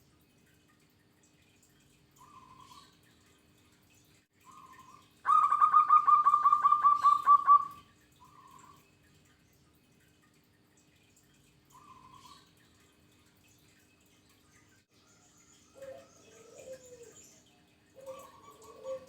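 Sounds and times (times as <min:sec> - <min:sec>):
dove cooing: 0:04.5 - 0:08.7, 0:15.8 - 0:17.3, 0:17.9 - 0:19.0.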